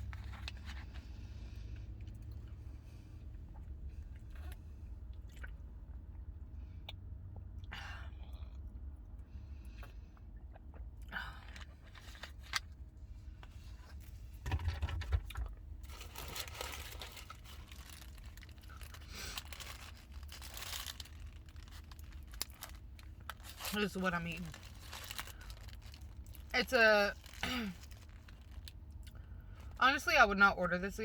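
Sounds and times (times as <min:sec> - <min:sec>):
steady low hum: 0:00.0 - 0:31.0
paper wrapper crinkling and tearing: 0:15.8 - 0:26.5, 0:27.1 - 0:28.7.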